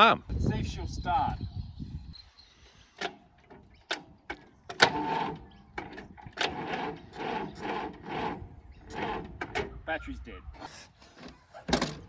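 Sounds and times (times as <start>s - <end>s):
starter motor cranking engine: 4.7s - 9.7s.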